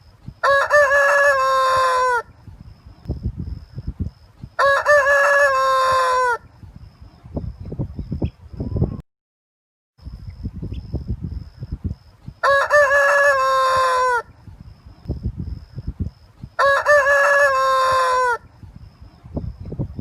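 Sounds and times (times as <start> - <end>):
rooster crowing: 0.4 - 2.3, 4.6 - 6.4, 12.4 - 14.3, 16.6 - 18.5.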